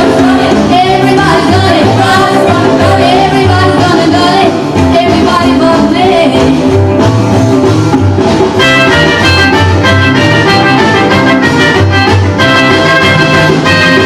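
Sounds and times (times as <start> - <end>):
person singing: 0.0 - 6.7
latin rock and roll band music: 0.0 - 14.0.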